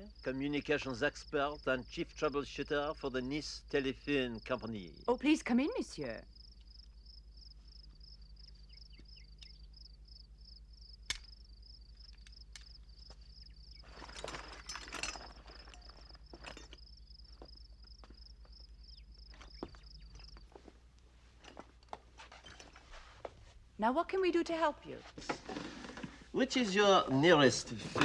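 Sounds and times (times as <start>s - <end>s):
crickets chirping: 0.0s - 23.5s
sharp click: 11.1s - 11.4s
knocks and rustling: 11.2s - 23.6s.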